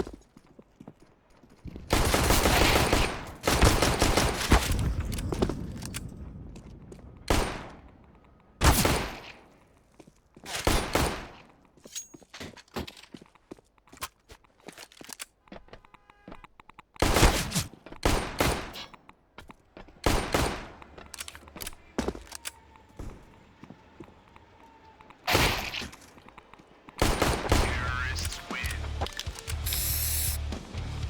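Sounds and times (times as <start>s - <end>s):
pistol shots with echo: 27.0s - 28.7s.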